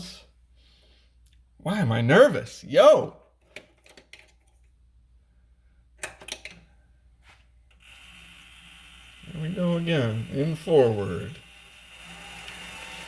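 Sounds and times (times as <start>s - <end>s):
faint lathe whir: 7.7s - 13.0s.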